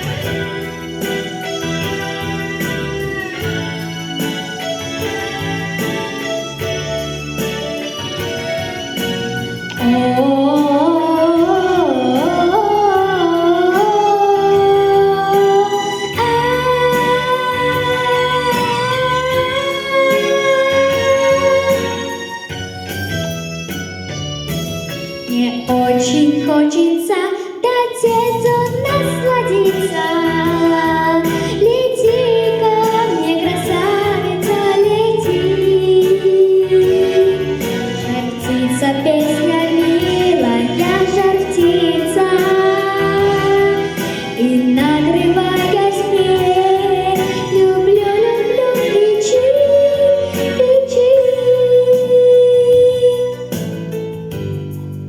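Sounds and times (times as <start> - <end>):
instrumental backing track: 0.0 - 55.0
woman singing wordless melody: 9.7 - 22.2, 25.3 - 53.6.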